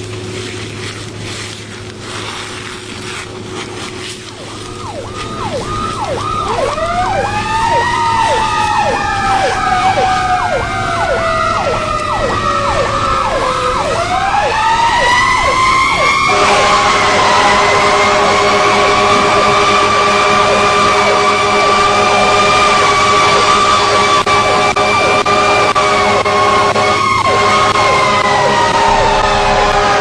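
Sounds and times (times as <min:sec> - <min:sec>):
siren wail: 0:04.4 - 0:30.0
siren yelp: 0:04.4 - 0:30.0
multi-tone horn blast: 0:15.0 - 0:30.0.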